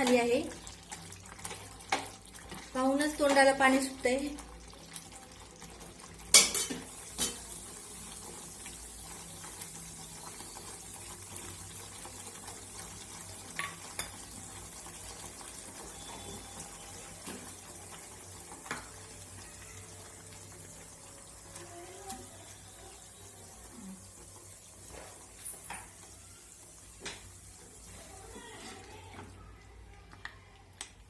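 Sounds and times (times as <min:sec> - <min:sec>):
faint hiss from pan: 0:06.2 - 0:29.8
utensils clinking on a pan: 0:06.3 - 0:07.5, 0:13.5 - 0:14.3.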